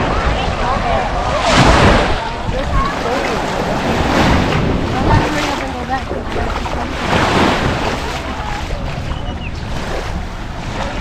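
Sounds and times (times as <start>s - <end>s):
faint voices: 0.0s - 11.0s
surf washing onto beach: 0.0s - 11.0s
wind buffeting microphone: 0.0s - 11.0s.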